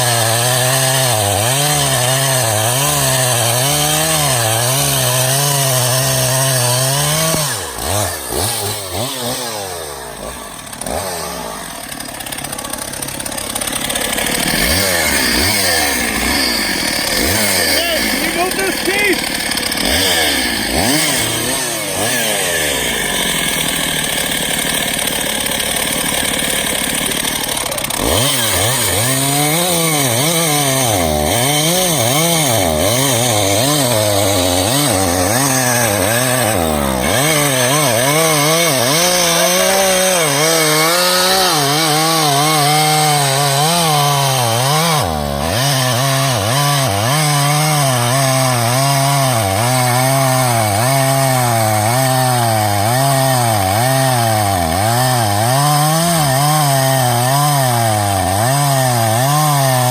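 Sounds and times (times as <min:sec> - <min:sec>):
chainsaw cutting logs: 0:00.0 - 0:59.9.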